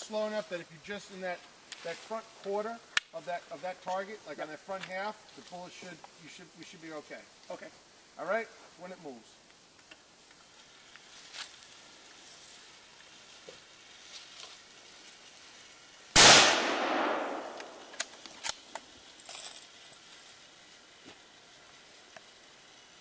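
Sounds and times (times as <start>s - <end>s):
rifle shot echoing: 16.2s - 17.9s.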